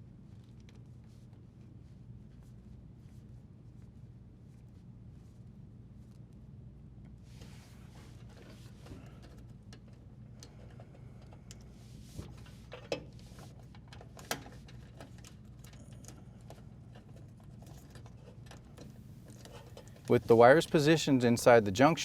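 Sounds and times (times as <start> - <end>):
low steady hum: 0.0 - 22.0
wires clicking and knocking: 12.3 - 21.0.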